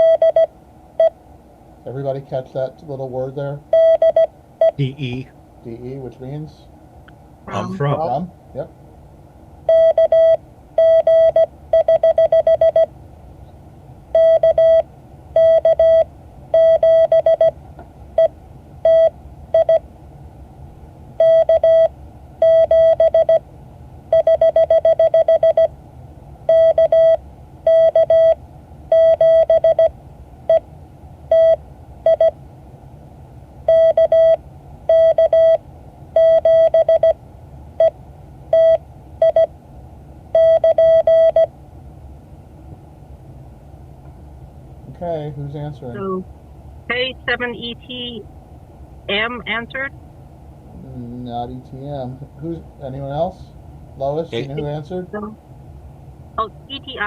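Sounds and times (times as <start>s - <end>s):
morse code beeps: 0.0s - 1.1s, 3.7s - 4.8s, 9.7s - 12.9s, 14.2s - 14.8s, 15.4s - 16.0s, 16.6s - 17.5s, 21.2s - 23.4s, 24.2s - 25.7s, 26.5s - 29.9s, 33.7s - 35.6s, 36.2s - 37.2s, 40.4s - 41.5s.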